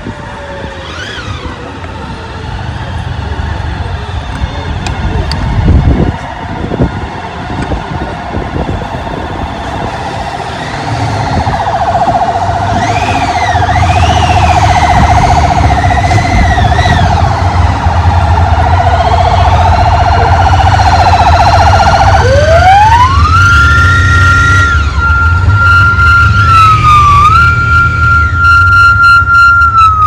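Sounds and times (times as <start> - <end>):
emergency sirens wailing: 0.0 - 30.0
steady low rumble: 1.7 - 28.4.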